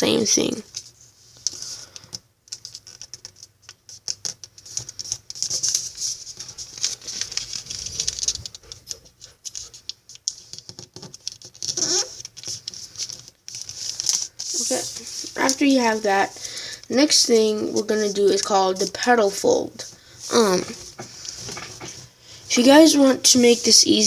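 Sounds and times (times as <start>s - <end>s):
paper being folded and creased: 2.5s - 24.0s.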